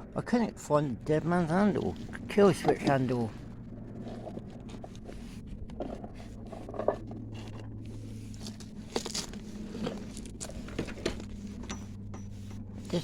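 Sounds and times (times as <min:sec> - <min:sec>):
low hum: 0:00.0 - 0:13.0
parts clicking and rustling: 0:03.8 - 0:13.0.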